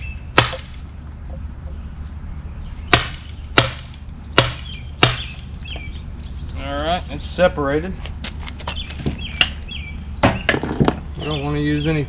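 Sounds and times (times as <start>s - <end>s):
hammer blows on wood: 2.9s - 5.9s.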